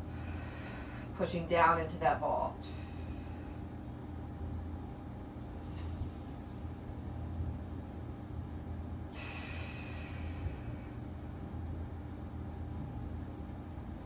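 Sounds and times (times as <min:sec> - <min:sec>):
low room hum: 0:00.0 - 0:14.0
hiss: 0:05.6 - 0:06.6, 0:09.2 - 0:10.4.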